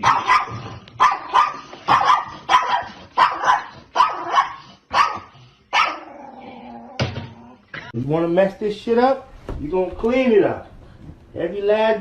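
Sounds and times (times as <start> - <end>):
dog barking: 0.0 - 6.1.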